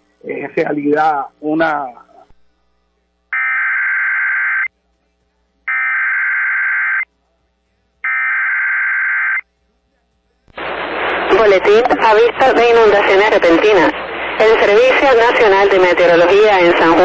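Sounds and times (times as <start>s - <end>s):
buzzing digital data tones: 3.3s - 4.7s, 5.7s - 7.1s, 8.0s - 9.5s.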